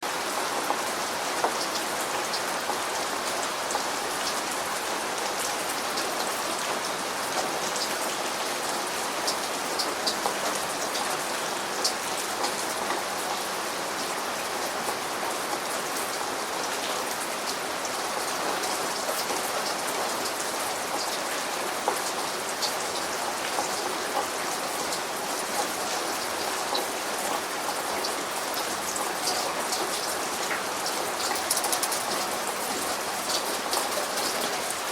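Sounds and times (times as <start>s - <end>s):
steady rain hiss: 0.0s - 34.9s
raindrops ticking: 26.7s - 34.9s.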